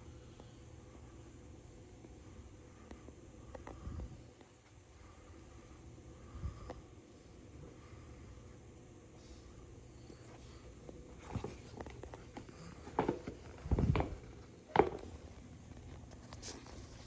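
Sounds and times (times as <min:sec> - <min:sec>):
soft thuds and knocks: 0:12.7 - 0:15.2.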